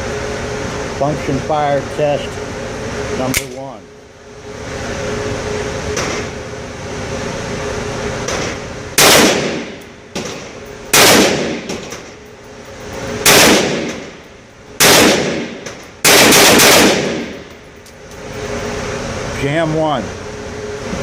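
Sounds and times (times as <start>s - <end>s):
pistol shots ringing: 9.0s - 11.9s, 14.8s - 17.4s.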